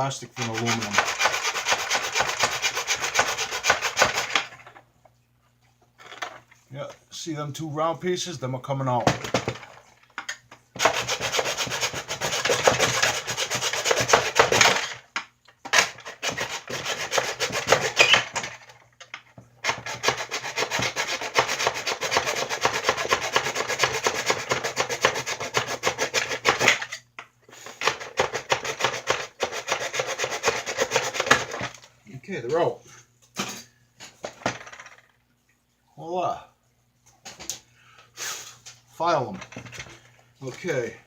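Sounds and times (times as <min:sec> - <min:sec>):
saw cutting through plastic: 0:00.0 - 0:04.6, 0:10.8 - 0:15.0, 0:15.8 - 0:18.5, 0:19.6 - 0:26.9, 0:27.7 - 0:31.7.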